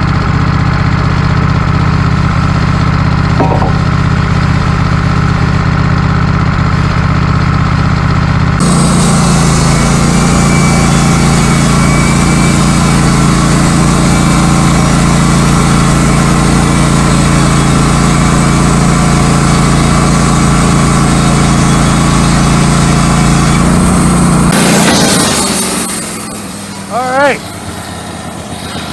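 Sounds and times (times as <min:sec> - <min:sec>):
band sawmill running: 0:00.0 - 0:28.9
hiss: 0:24.6 - 0:28.9.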